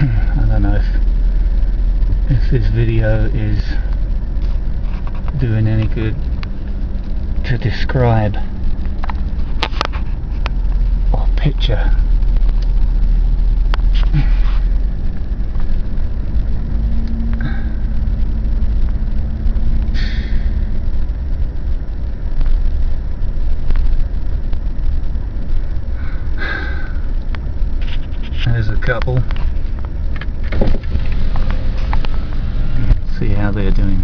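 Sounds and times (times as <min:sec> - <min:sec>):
vehicle cabin low rumble: 0:00.0 - 0:34.0
faint hum: 0:04.9 - 0:29.8.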